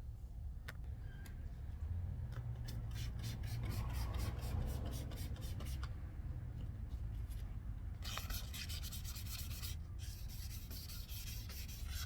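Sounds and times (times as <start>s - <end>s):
sandpaper sanding plastic: 8.2s - 12.0s.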